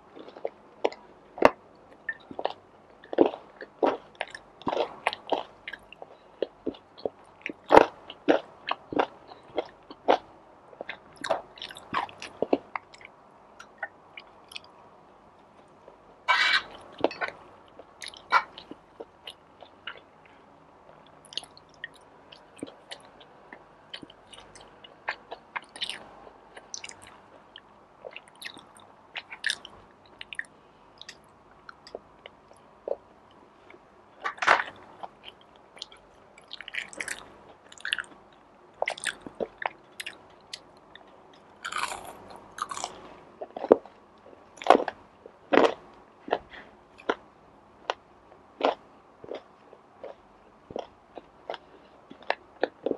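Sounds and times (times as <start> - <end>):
chewing and biting food: 10.8 - 14.7, 20.9 - 33.0, 34.2 - 47.2, 48.6 - 52.9.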